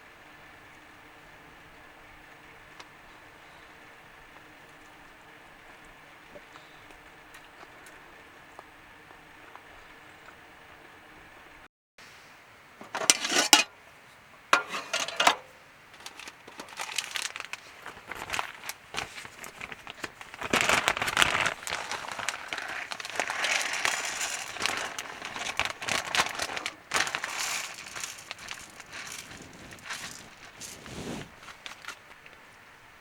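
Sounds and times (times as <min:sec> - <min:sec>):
crinkling and rustling: 0:12.8 - 0:13.7, 0:14.5 - 0:32.6.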